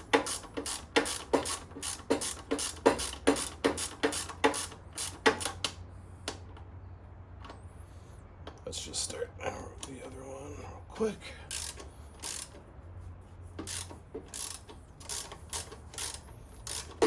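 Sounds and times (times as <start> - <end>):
socket ratchet clicking: 0.0 - 5.8, 11.5 - 12.6, 13.6 - 17.0.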